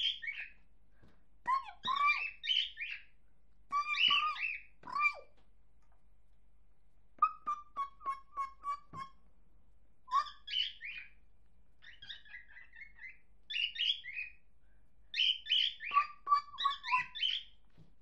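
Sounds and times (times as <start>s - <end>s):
cockatiel chirping and warbling: 0.0s - 0.6s, 1.5s - 3.1s, 3.7s - 5.4s, 7.2s - 9.2s, 10.1s - 11.2s, 11.8s - 14.4s, 15.1s - 17.6s.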